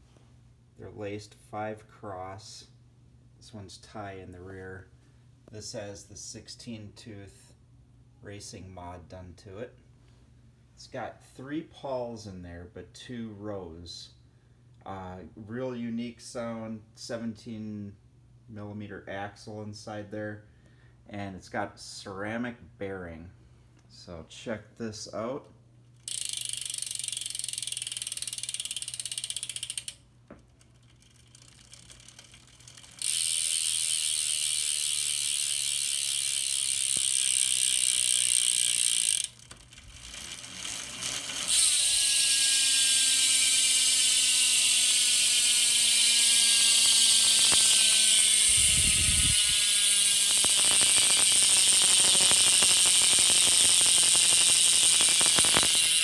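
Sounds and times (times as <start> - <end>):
bicycle hub freewheeling buzz: 26.0 - 30.0, 30.6 - 56.0.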